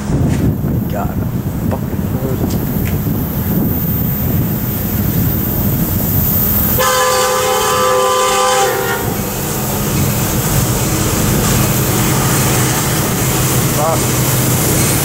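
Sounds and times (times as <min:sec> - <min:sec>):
low rumble: 0:00.0 - 0:06.8
locomotive air horn blast: 0:06.8 - 0:09.4.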